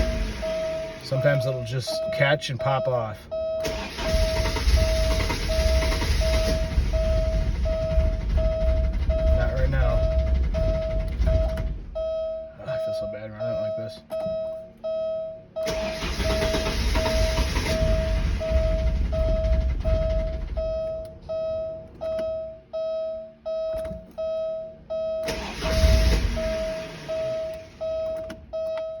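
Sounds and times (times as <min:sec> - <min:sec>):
car engine cranking: 0:00.0 - 0:12.3, 0:15.6 - 0:22.5, 0:25.2 - 0:29.0
warning chime beeping: 0:00.0 - 0:29.0.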